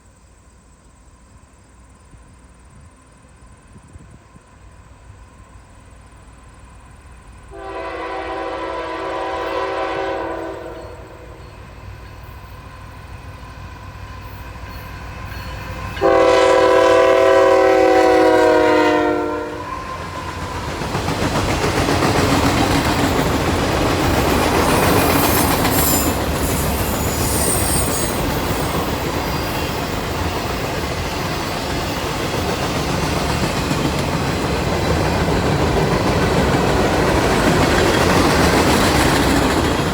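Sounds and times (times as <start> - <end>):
train rumbling past: 0.0 - 39.9
locomotive air horn blasts: 7.5 - 11.5, 16.0 - 20.0
wheels clacking over rail joints: 19.9 - 39.9.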